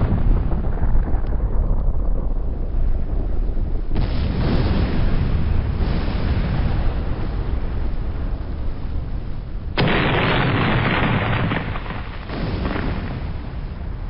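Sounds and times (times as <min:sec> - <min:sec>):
steady low rumble: 0:00.0 - 0:14.0
artillery shell explosion: 0:09.8 - 0:14.0.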